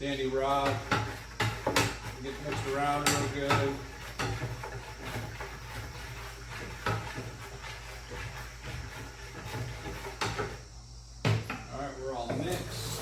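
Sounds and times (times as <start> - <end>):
water swishing in a bucket: 0.0 - 10.8, 12.1 - 13.0
rod knocking against bucket: 0.5 - 5.9, 6.5 - 10.6.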